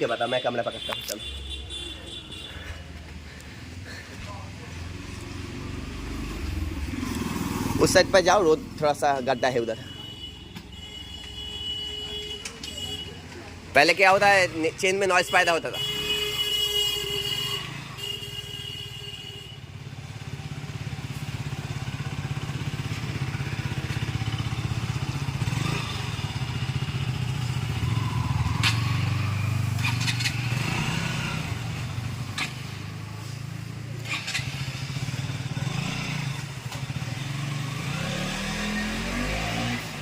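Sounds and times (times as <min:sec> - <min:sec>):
motorcycle engine revving: 0:04.7 - 0:09.2, 0:19.8 - 0:40.0.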